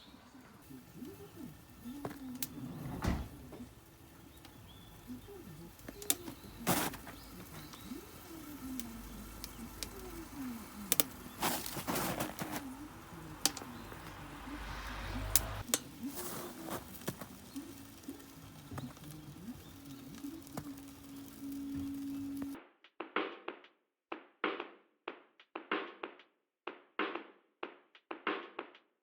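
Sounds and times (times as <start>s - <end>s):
wood fire crackling: 0.0s - 22.6s.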